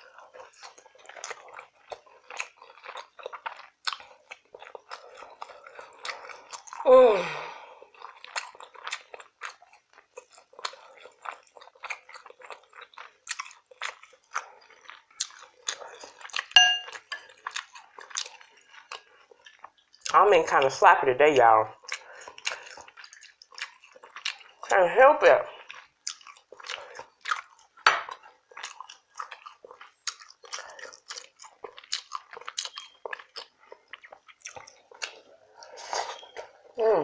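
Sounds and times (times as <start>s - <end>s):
wet chewing and lip-smacking: 0.0s - 6.9s, 7.8s - 20.2s, 21.8s - 24.7s, 25.5s - 36.8s
ringing clink: 16.6s - 17.3s.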